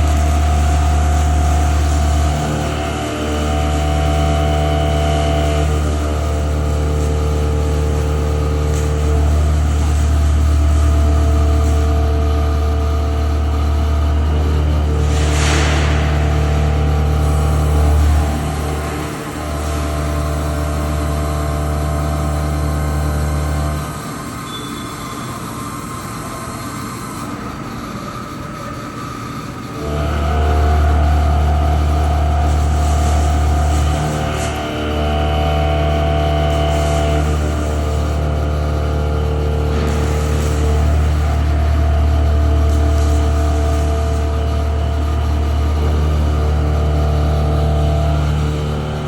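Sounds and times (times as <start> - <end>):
machine whining tones: 0.0 - 49.0
milling machine motor hum: 0.0 - 49.0.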